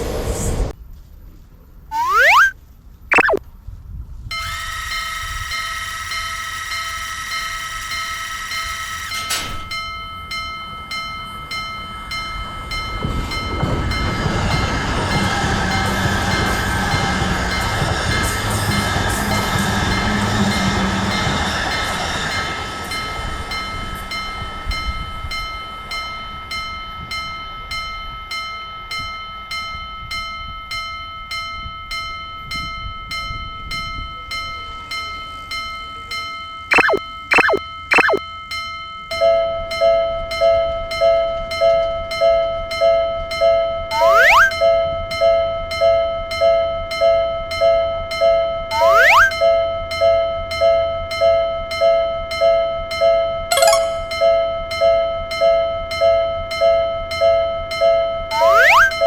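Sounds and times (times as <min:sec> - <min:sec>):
railroad crossing bell dinging: 0:49.9 - 0:58.5.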